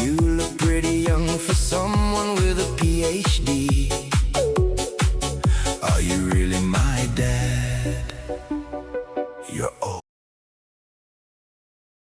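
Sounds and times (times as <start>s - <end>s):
kick drum beat: 0.2s - 6.5s.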